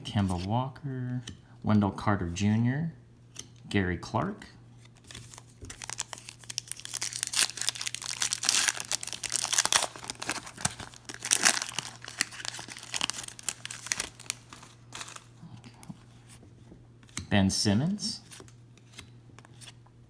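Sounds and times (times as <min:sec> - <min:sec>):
foil wrapper tearing and crinkling: 0:05.0 - 0:15.9.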